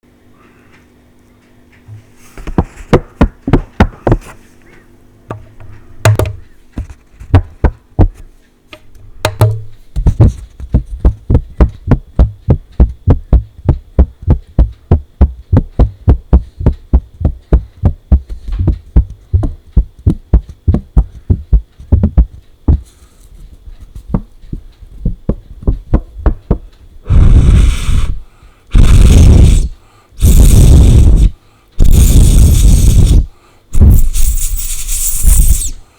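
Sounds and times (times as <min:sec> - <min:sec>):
fingers tapping on paper: 0:02.5 - 0:04.3, 0:09.2 - 0:22.9, 0:23.8 - 0:26.7
loud bursts of noise: 0:27.0 - 0:35.8.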